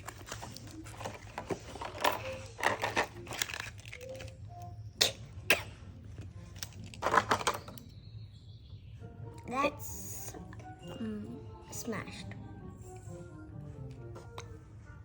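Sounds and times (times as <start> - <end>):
plastic packaging crinkling: 0.0 - 4.4.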